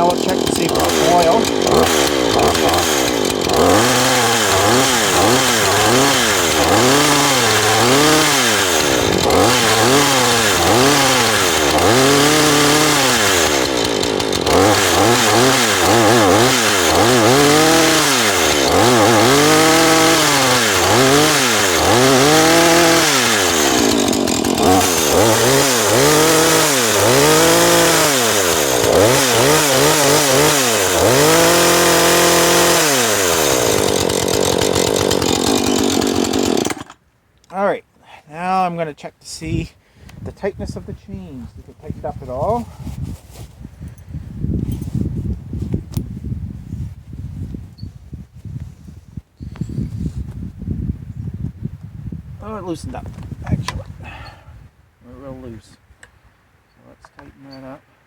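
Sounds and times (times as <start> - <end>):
chainsaw revving: 0.0 - 37.0.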